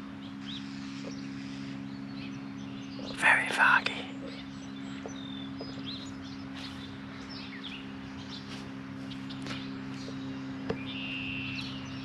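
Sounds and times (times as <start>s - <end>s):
steady low hum: 0.0s - 12.0s
wild birds chirping: 0.0s - 12.0s.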